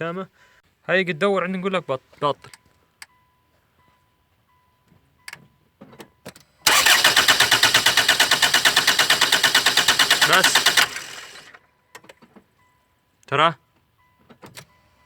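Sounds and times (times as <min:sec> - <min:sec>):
engine cranking on starter motor: 0:06.6 - 0:11.6.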